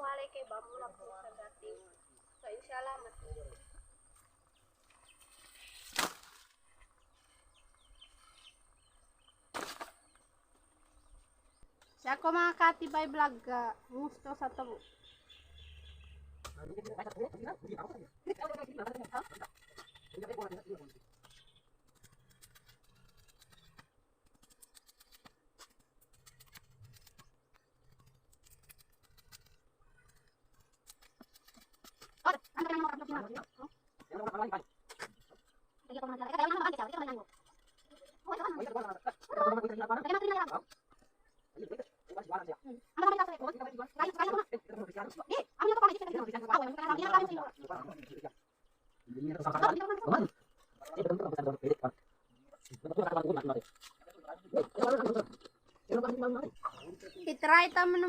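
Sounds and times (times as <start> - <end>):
small birds chirping: 0.0 - 58.0
loud rasping noises: 15.9 - 35.8
sugar cane fibre crunching: 18.3 - 35.8, 52.6 - 56.2.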